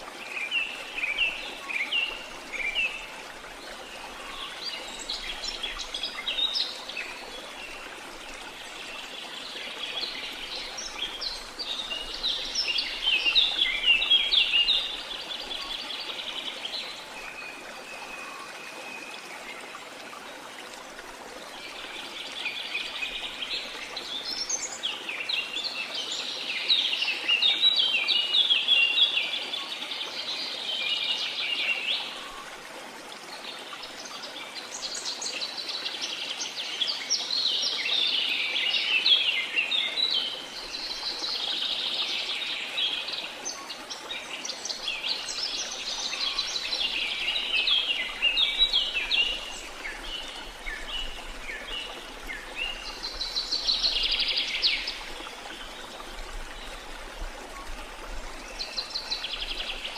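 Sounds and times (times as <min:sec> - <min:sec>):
rushing falling water: 0:00.0 - 0:59.9.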